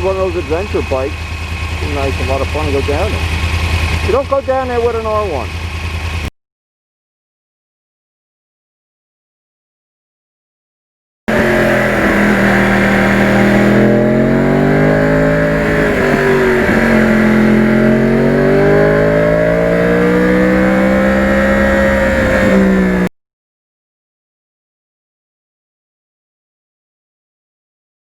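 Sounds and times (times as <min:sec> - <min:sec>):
motorcycle engine revving: 0:00.0 - 0:06.3, 0:11.3 - 0:23.1.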